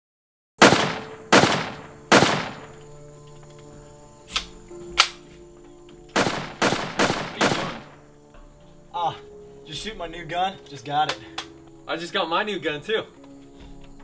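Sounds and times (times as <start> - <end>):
loud gunshots: 0.6 - 2.7, 6.2 - 8.0
faint sharp cracks: 0.6 - 3.7, 4.3 - 8.1, 11.0 - 11.8.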